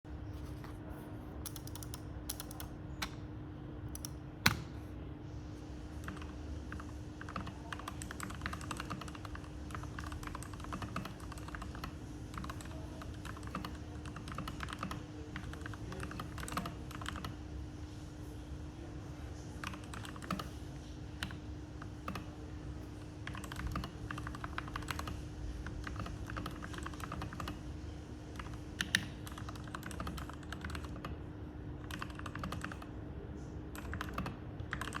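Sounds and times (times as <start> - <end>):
mechanical keyboard typing: 1.4 - 3.2, 3.9 - 4.6, 6.0 - 17.4, 19.6 - 20.6, 22.0 - 22.4, 23.2 - 27.6, 28.3 - 31.2, 31.8 - 32.9, 33.7 - 35.0.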